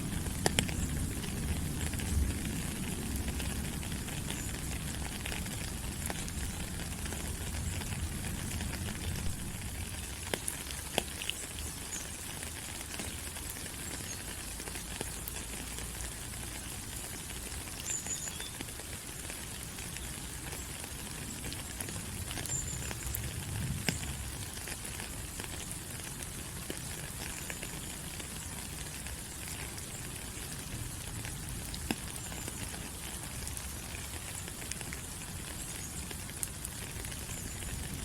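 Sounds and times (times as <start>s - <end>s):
rain on foliage: 0.0s - 38.0s.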